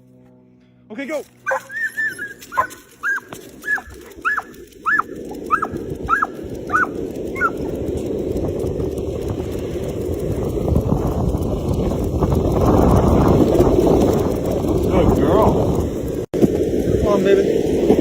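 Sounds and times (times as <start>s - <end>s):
dog yipping excitedly: 1.4s - 7.8s.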